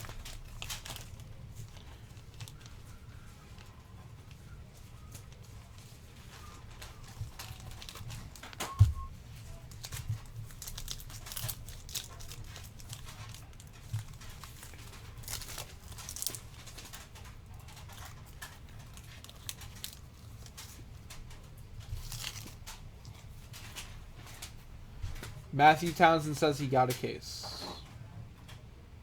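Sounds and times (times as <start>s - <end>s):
wrapper crinkling and tearing: 0.0s - 2.9s, 6.4s - 8.6s, 9.6s - 20.8s, 21.9s - 23.8s.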